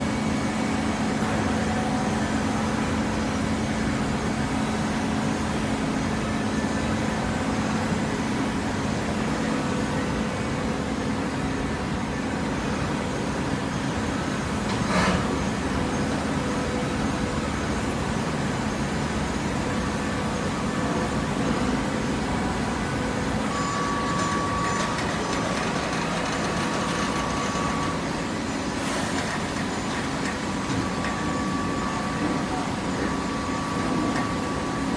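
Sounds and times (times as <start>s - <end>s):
hydraulic baler humming: 13.2s - 34.9s.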